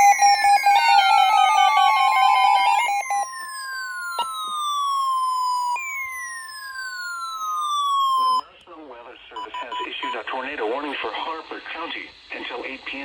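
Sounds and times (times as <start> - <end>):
falling siren-like sweeps: 0.0 - 8.4
rapid beeping: 0.0 - 8.4, 9.4 - 10.3
steady alarm tone: 0.0 - 8.4.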